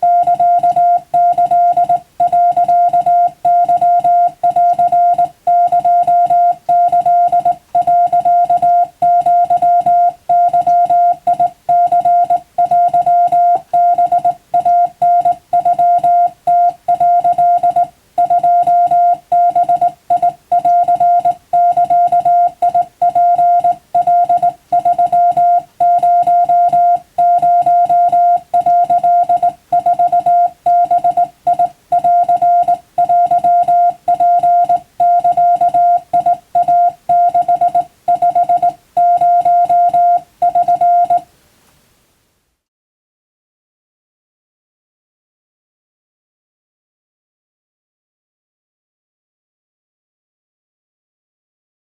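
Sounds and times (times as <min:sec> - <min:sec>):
morse code tone: 0:00.0 - 0:41.3.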